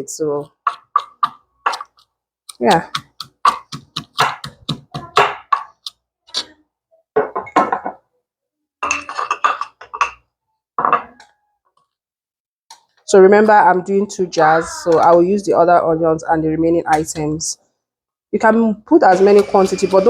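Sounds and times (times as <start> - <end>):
kitchen items clinking on glass jar: 8.8 - 11.2.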